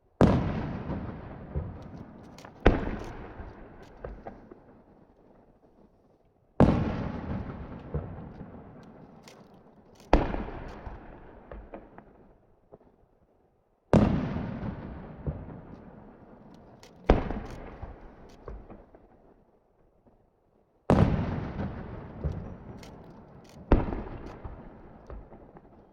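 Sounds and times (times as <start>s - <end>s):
firework shells booming: 0.2s - 4.6s, 16.6s - 19.0s, 20.9s - 25.8s
sharp firework pops: 0.2s - 4.6s, 6.6s - 12.1s, 16.6s - 19.1s, 20.9s - 25.8s.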